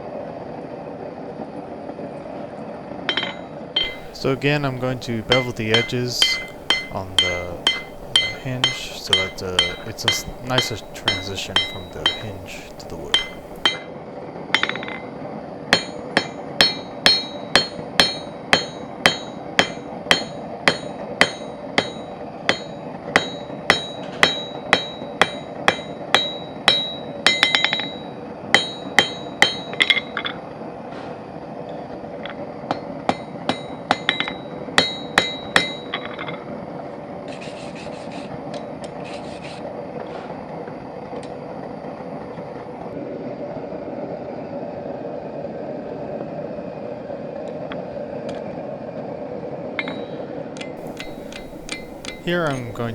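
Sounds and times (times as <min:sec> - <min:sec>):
steady hum: 0:03.8 - 0:13.6, 0:50.8 - 0:52.9
hammer striking iron on anvil: 0:03.8 - 0:13.7, 0:50.8 - 0:52.9.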